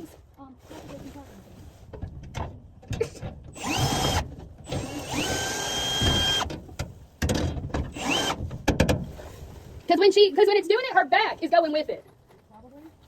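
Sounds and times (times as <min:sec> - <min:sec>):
power drill motor whine: 0:03.6 - 0:06.5, 0:07.9 - 0:08.4.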